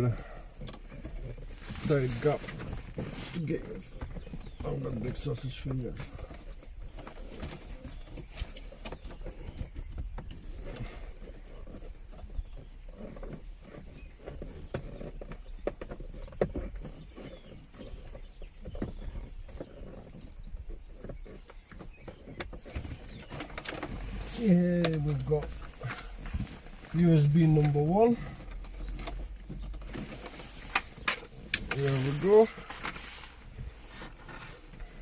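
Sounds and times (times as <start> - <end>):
clicks taps and rubbing scrapes: 0.0 - 35.0.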